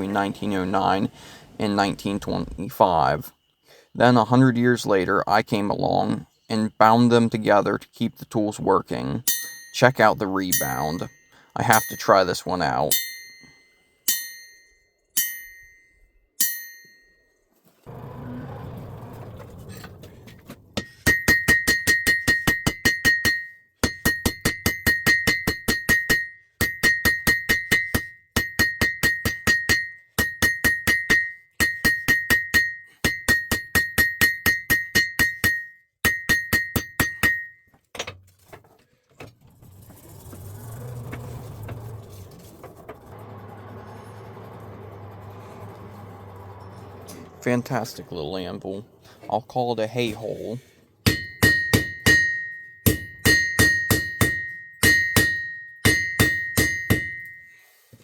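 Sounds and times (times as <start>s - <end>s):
bouncing hammer strikes: 9.3s - 15.8s, 20.4s - 38.2s, 51.0s - 57.5s
hammer ringing on anvil: 9.3s - 17.2s, 20.8s - 37.6s, 51.0s - 57.7s.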